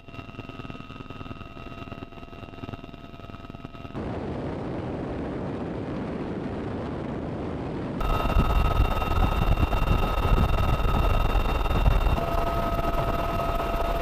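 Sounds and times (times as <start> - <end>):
helicopter rumble: 0.0 - 4.0, 8.0 - 14.0
high whine: 0.0 - 4.1, 8.0 - 14.0.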